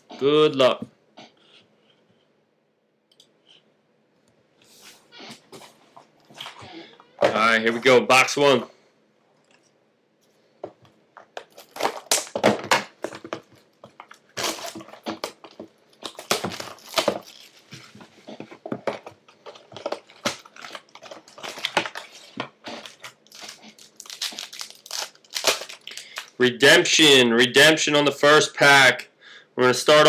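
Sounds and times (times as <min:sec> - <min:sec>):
plastic wrap crinkling and tearing: 0:11.3 - 0:18.4, 0:19.3 - 0:26.4.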